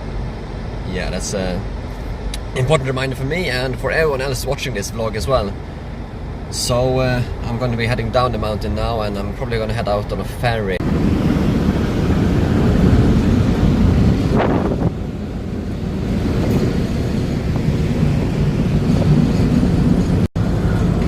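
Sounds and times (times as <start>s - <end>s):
wind buffeting microphone: 10.8s - 21.0s.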